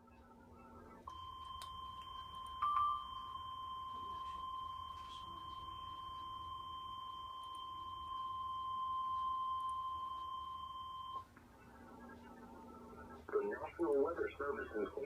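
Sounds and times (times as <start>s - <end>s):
high-pitched alarm tone: 1.1s - 11.3s.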